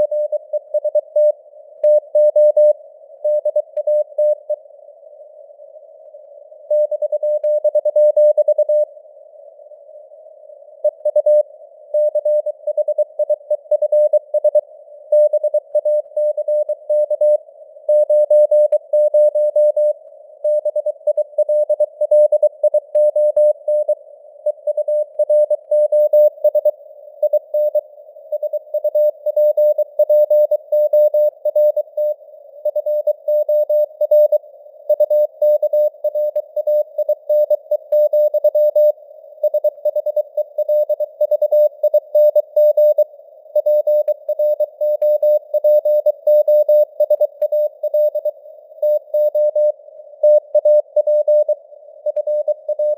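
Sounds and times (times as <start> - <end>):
morse code tone: 43.6 - 52.9.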